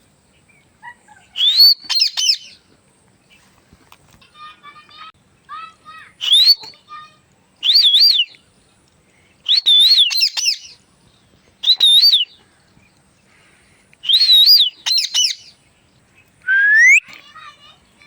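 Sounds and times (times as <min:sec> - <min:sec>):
parrot whistling: 0:14.1 - 0:15.4, 0:16.5 - 0:17.0.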